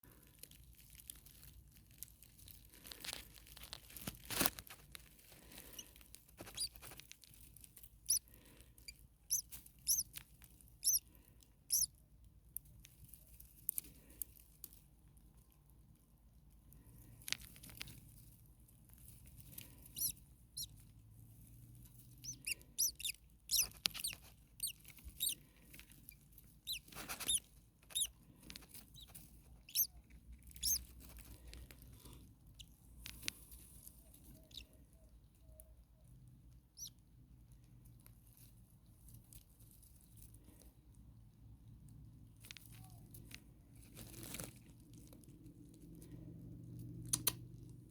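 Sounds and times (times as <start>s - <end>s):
rustling and scratching: 0.0s - 11.9s, 12.6s - 34.9s, 36.8s - 41.0s, 42.0s - 47.9s
starlings squeaky calls: 9.3s - 10.0s, 10.8s - 11.0s, 29.7s - 30.0s.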